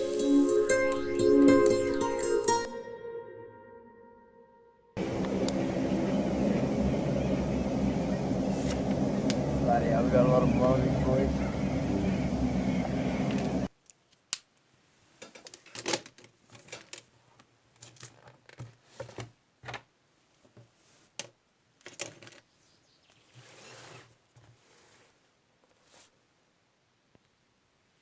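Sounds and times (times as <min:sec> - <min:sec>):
background music: 0:00.0 - 0:05.0
soft rustling of objects: 0:13.3 - 0:26.4.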